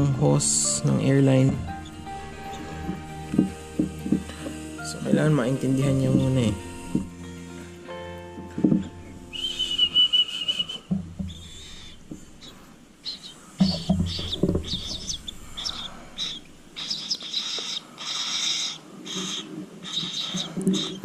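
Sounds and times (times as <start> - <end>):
bird raspy begging calls: 0.0 - 4.9, 8.8 - 21.0
bird whistled note: 9.3 - 21.0.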